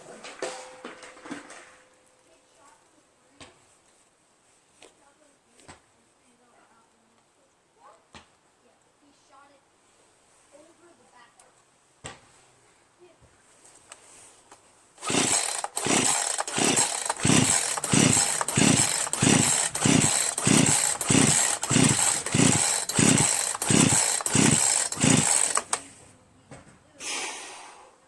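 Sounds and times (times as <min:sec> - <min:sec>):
chainsaw recoil starter whirring: 0:15.0 - 0:26.0.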